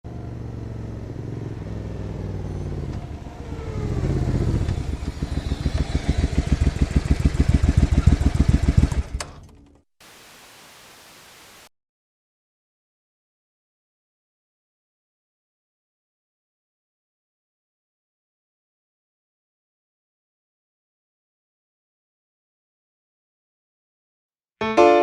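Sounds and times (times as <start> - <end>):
motorcycle engine revving and idling: 0.1 - 9.6
steady hiss: 10.0 - 11.7.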